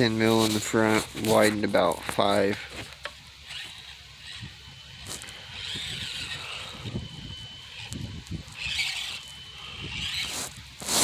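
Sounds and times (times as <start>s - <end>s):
toy car motor whine: 2.3s - 11.0s.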